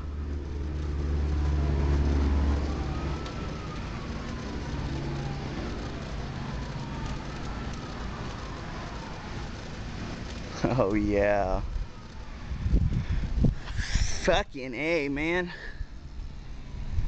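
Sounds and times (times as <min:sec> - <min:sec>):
distant siren wailing: 0:00.0 - 0:13.0
vehicle rumbling past: 0:00.0 - 0:13.7.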